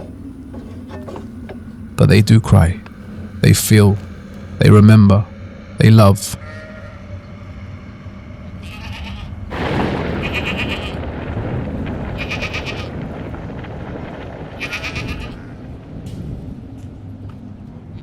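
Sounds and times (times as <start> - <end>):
steady background noise: 0.0 - 18.0
livestock bleating: 6.4 - 7.1, 8.6 - 9.4, 10.2 - 11.0, 12.2 - 12.9, 14.6 - 15.6.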